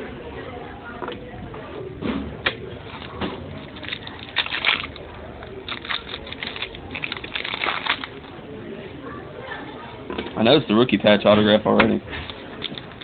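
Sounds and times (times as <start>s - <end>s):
wrapper crinkling and tearing: 2.9s - 8.4s, 12.3s - 13.0s.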